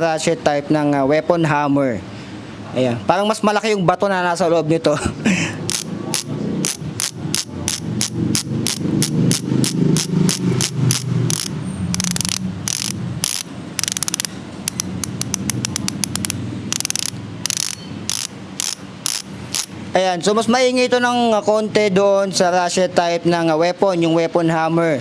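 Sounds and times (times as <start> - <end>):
bicycle hub ratchet clicking: 5.6 - 19.8.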